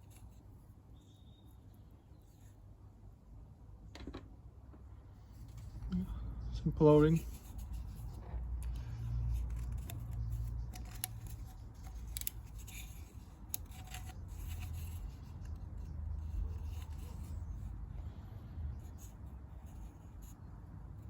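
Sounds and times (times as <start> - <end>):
hands rubbing engine part: 6.9 - 17.9.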